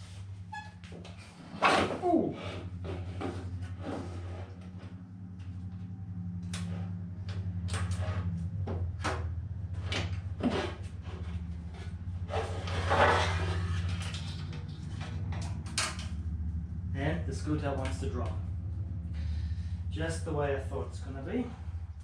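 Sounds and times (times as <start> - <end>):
steady low hum: 0.0 - 22.0
scraping rattle: 1.0 - 17.0.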